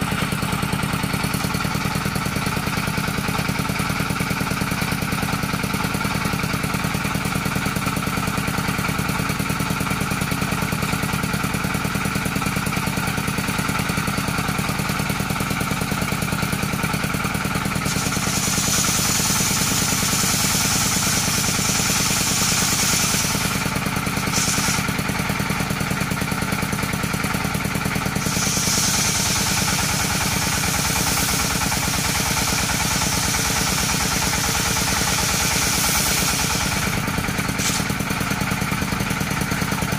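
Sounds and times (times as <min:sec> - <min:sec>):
circular saw motor running: 0:12.8 - 0:39.9
saw blade cutting wood hiss: 0:17.8 - 0:25.2, 0:28.0 - 0:38.2.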